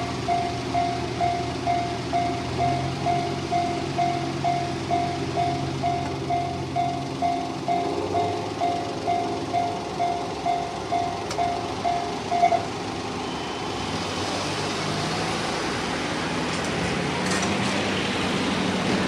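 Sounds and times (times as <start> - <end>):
level crossing warning beeps: 0.0 - 14.1
vehicle rumble: 0.0 - 19.0.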